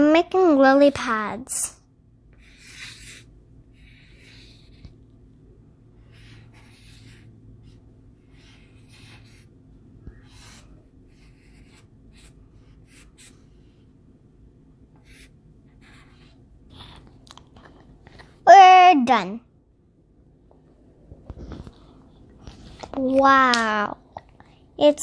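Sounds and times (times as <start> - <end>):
drawing tool scratching paper: 2.4 - 5.0, 6.0 - 9.6, 10.2 - 13.4.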